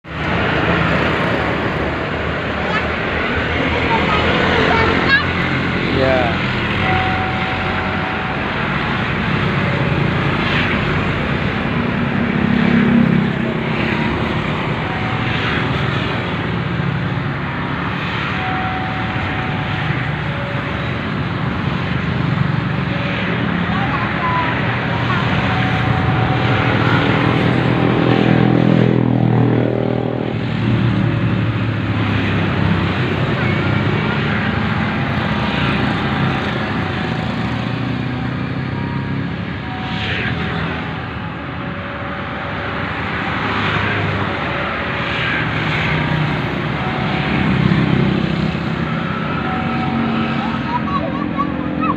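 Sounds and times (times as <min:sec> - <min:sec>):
dense rushing noise: 0:00.0 - 0:06.8
engine rumbling: 0:00.0 - 0:51.9.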